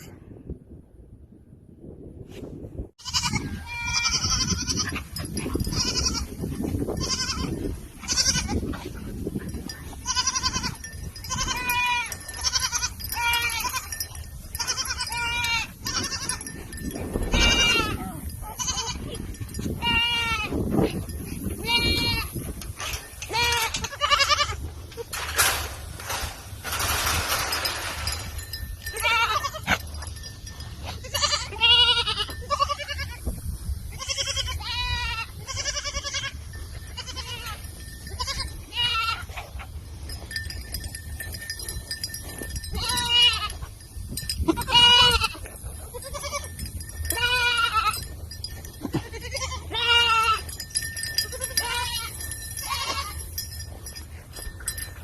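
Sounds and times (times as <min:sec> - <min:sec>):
goats bleating: 0:03.0 - 0:06.4, 0:07.0 - 0:09.0, 0:09.9 - 0:16.6, 0:17.2 - 0:20.6, 0:21.6 - 0:22.3, 0:23.2 - 0:25.1, 0:28.8 - 0:30.2, 0:30.9 - 0:33.2, 0:33.9 - 0:39.5, 0:42.6 - 0:43.6, 0:44.5 - 0:53.2.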